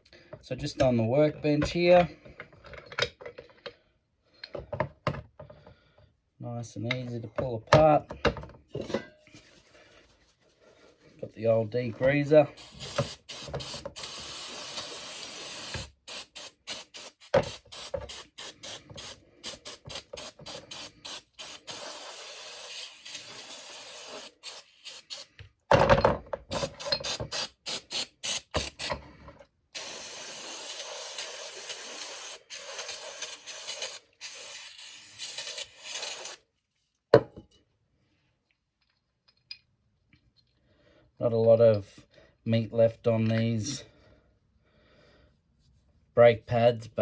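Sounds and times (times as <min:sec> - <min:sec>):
aerosol spray hissing: 0:12.6 - 0:25.3, 0:26.6 - 0:28.9, 0:29.8 - 0:36.4.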